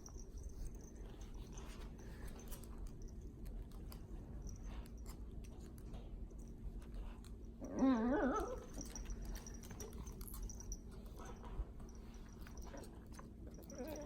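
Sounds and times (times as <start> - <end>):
faint scratching and rustling: 0.0 - 14.0
puppy whining: 7.5 - 14.0.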